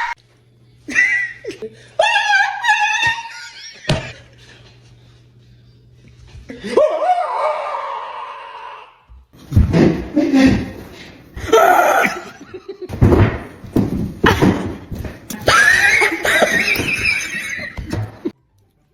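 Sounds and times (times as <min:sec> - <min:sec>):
people laughing: 0:00.9 - 0:05.3, 0:06.5 - 0:07.6, 0:11.5 - 0:13.0, 0:15.3 - 0:18.3
people making silly vocal sounds: 0:11.4 - 0:12.4.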